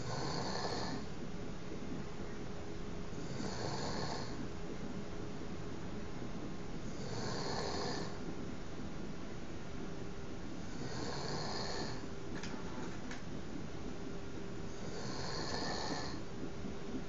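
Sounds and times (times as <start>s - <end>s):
man snoring: 0.0s - 1.1s, 3.2s - 4.4s, 6.9s - 8.2s, 10.7s - 12.0s, 14.7s - 16.2s.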